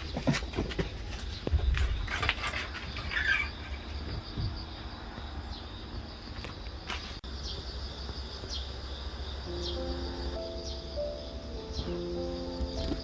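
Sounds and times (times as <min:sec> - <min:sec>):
rustles and clicks: 0:00.0 - 0:04.6
insects chirring: 0:00.0 - 0:13.0.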